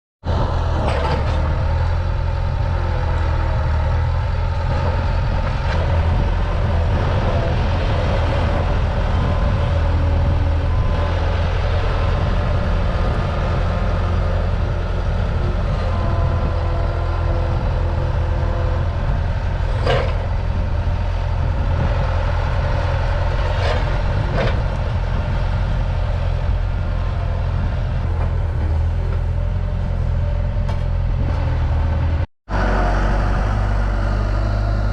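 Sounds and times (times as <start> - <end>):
diesel engine rumbling: 0.2 - 34.9
shifting whine: 0.3 - 34.9.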